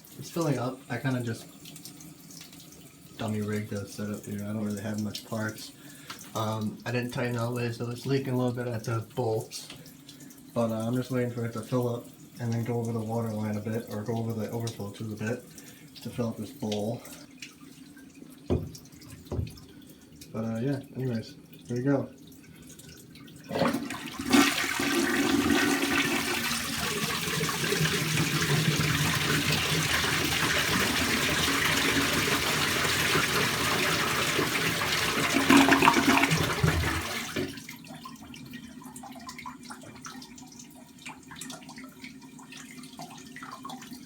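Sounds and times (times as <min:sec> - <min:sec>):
quiet running water: 0:00.0 - 0:44.0
toilet handle knock: 0:18.5 - 0:19.6
toilet flush rushing water: 0:23.4 - 0:38.2.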